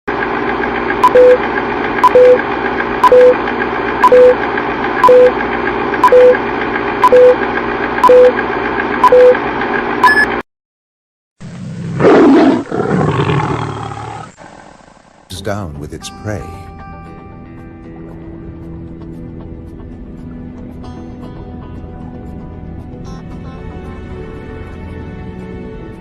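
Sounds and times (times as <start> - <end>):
steady hum: 0.1 - 10.4
electronic beep and click: 2.0 - 2.4, 5.0 - 5.4, 6.0 - 6.4, 7.0 - 7.4, 8.0 - 8.4, 9.0 - 9.4, 10.0 - 10.4
loud roar: 11.8 - 14.4.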